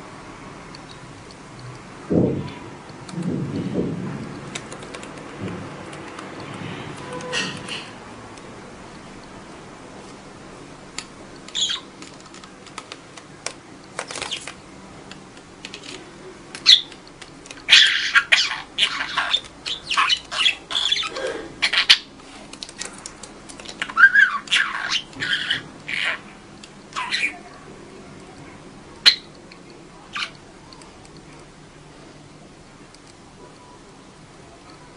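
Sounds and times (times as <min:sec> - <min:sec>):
budgerigar chirping: 0:11.6 - 0:11.9, 0:17.7 - 0:22.1, 0:23.8 - 0:26.2.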